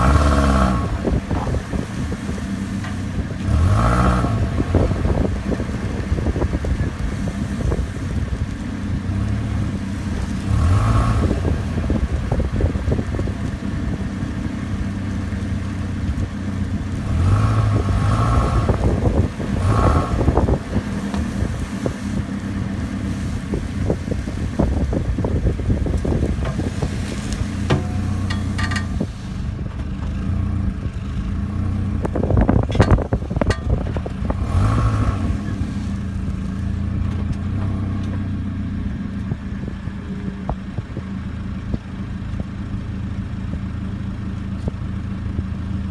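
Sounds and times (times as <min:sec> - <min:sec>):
vehicle engine humming: 0:00.0 - 0:45.9
clunks and knocks: 0:27.6 - 0:29.1, 0:32.6 - 0:34.2.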